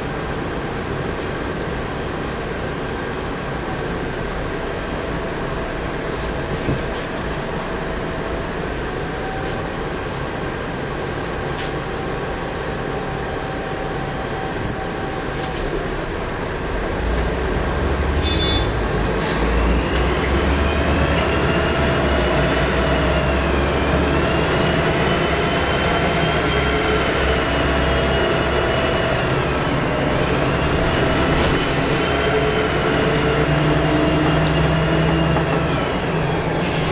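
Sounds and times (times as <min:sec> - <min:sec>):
diesel bus engine running: 0:00.0 - 0:36.9
high turbo whistle: 0:18.2 - 0:18.8.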